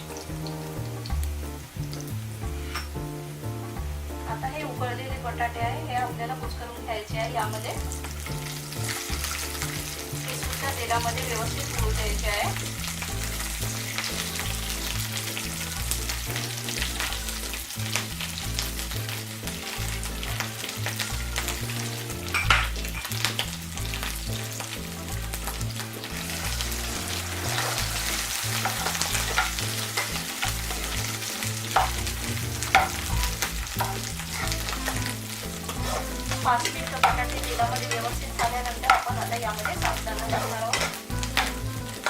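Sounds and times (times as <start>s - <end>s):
potatoes sizzling in hot oil: 0.0s - 42.0s
utensil knocking against pan: 32.7s - 33.0s.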